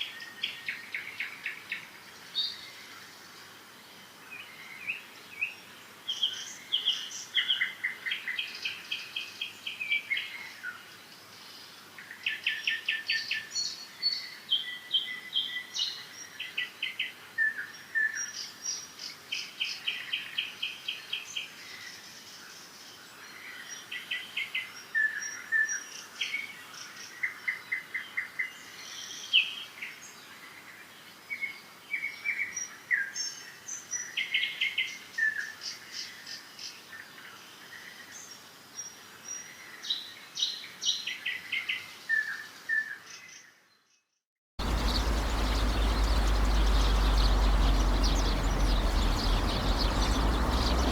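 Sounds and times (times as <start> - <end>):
songbirds singing and chirping: 44.6 - 50.9.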